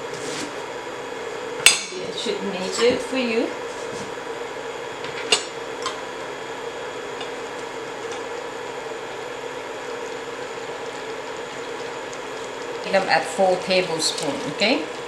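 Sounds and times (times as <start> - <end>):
constant hum: 0.0 - 15.0
oil sizzling in pan: 5.4 - 15.0.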